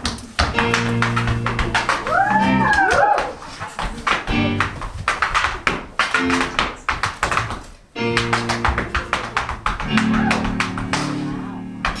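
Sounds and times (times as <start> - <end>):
tap shoes clicking: 0.0 - 12.0
instrumental music with held notes: 8.0 - 12.0.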